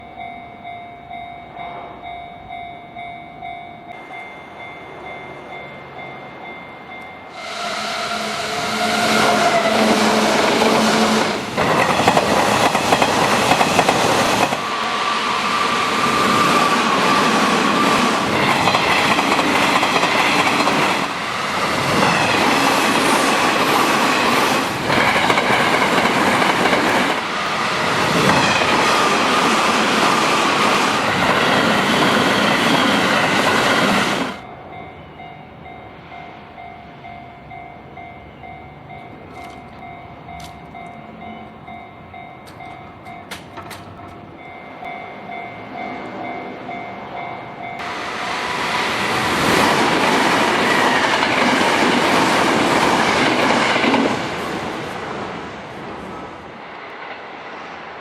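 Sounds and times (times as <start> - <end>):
level crossing bell ringing: 0.0 - 7.4, 34.4 - 48.0
train passing with wheel clatter: 0.0 - 58.0.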